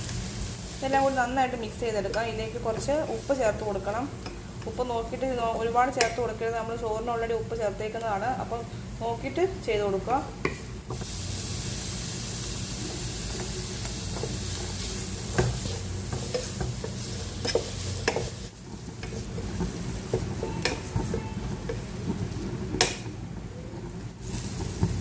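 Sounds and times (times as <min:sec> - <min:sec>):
vegetables sizzling in oil: 0:00.0 - 0:25.0
utensil scraping a pan: 0:12.7 - 0:23.0.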